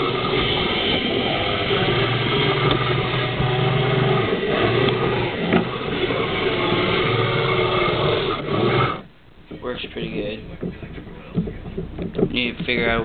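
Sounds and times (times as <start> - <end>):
small electric motors humming: 0.0 - 9.1.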